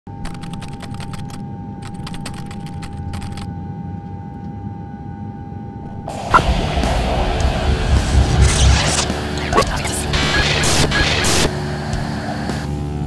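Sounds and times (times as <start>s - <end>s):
low hum: 0.1s - 13.0s.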